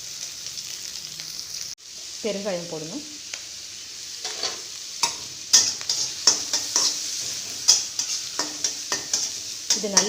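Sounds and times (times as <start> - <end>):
onion sizzling in hot oil: 0.0 - 10.0
spoon scraping and knocking pan: 4.2 - 10.0.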